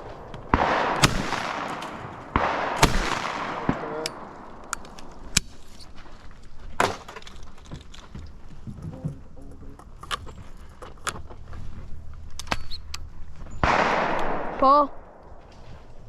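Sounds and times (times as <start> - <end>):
shotgun firing with echo: 0.4 - 4.7, 13.6 - 15.2.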